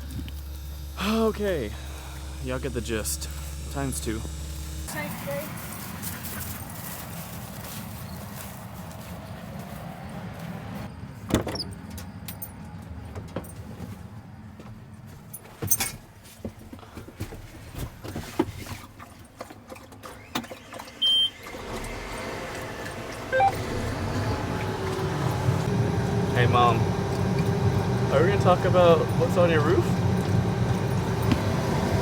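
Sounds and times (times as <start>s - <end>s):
low engine hum: 0.0s - 11.2s, 21.4s - 32.0s
short high beep: 23.3s - 23.6s.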